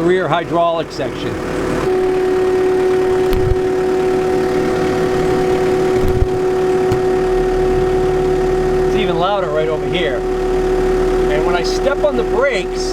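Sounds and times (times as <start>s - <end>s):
diesel engine running: 0.0s - 12.9s
high-pitched hydraulic whine: 1.4s - 12.9s
low knocks: 2.0s - 9.0s.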